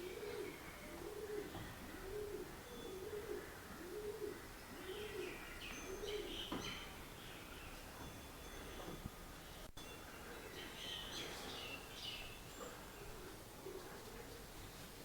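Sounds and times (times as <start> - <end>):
dove cooing: 0.0 - 6.5, 13.0 - 14.4.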